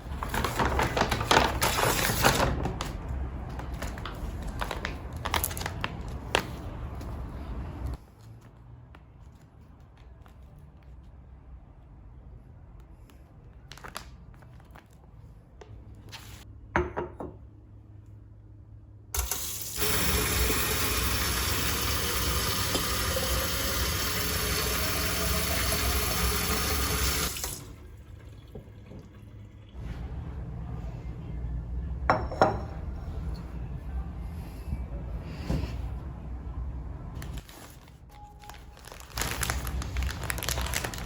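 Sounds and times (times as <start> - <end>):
tap water running into sink: 19.2 - 29.6.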